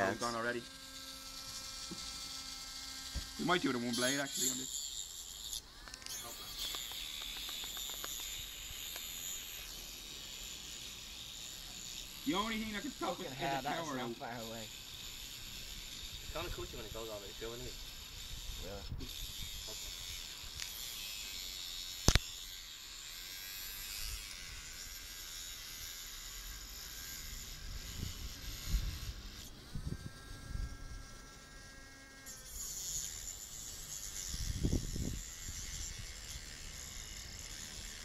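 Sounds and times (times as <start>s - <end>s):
rotary tool grinding steel: 0.0s - 38.0s
sharp click: 22.0s - 22.2s.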